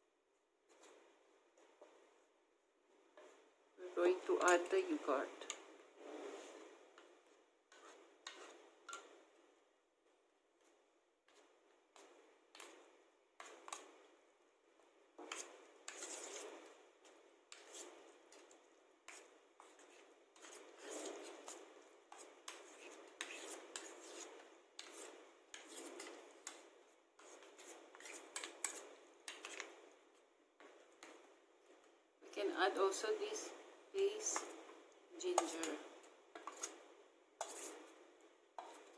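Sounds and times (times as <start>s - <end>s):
utensil scraping container: 35.2s - 35.8s, 37.4s - 37.8s.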